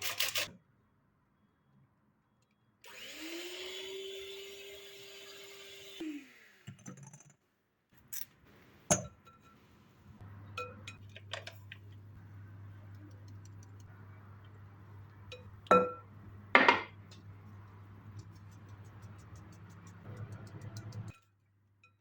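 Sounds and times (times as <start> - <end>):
glassware and dishes clinking: 15.3 - 16.0.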